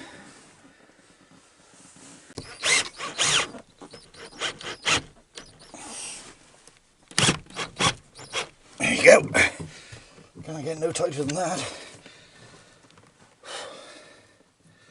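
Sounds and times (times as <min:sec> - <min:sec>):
screw tightening scrapes: 0:02.4 - 0:05.8, 0:07.1 - 0:08.6.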